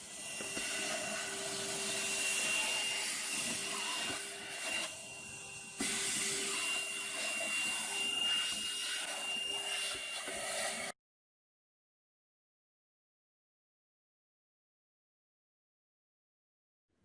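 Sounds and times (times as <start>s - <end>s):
handheld vacuum cleaner running: 0.0s - 11.0s.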